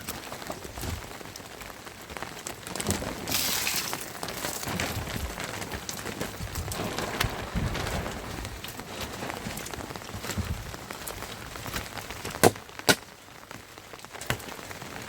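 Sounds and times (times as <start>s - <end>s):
rain falling: 0.0s - 15.0s
raindrops ticking on surfaces: 0.0s - 15.0s.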